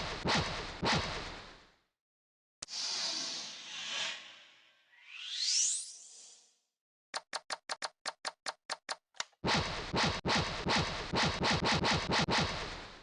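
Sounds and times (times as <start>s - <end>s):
toy gun rapid firing: 9.5s - 12.7s.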